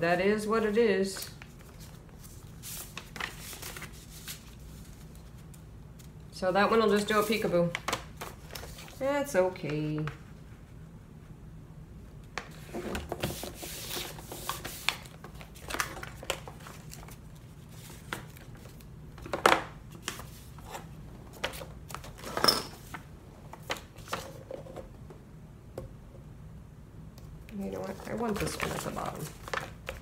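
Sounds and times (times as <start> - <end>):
low steady hum: 0.0 - 30.0
paper envelopes rustling: 0.5 - 6.2, 6.8 - 10.2, 12.5 - 19.3, 19.9 - 24.3, 27.7 - 30.0.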